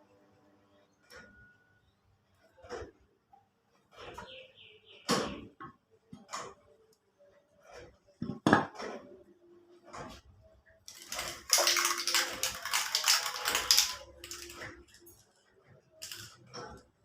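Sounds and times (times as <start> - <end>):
small metal parts clicking: 10.9 - 15.2, 16.0 - 16.8.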